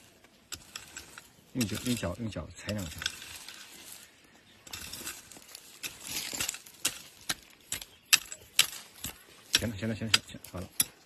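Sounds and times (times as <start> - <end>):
scraping and shuffling: 0.0 - 10.9.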